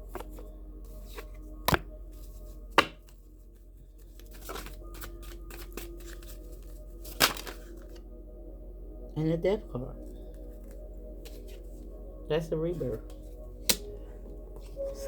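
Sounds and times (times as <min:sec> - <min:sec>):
card rustling: 0:00.0 - 0:03.2, 0:03.9 - 0:08.0.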